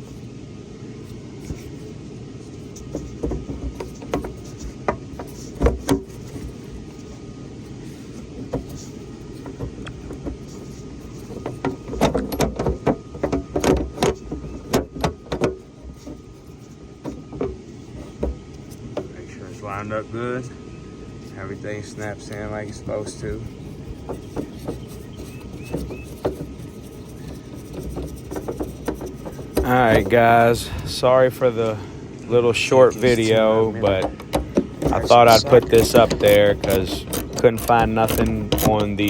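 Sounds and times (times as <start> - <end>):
metallic clicks and knocks: 33.0 - 39.0.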